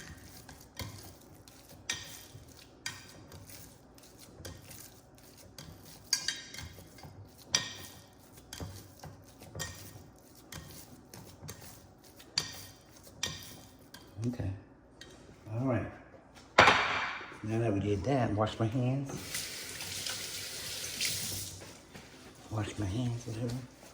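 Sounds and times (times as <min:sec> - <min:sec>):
utensil clinking against a dish: 0:00.0 - 0:14.3.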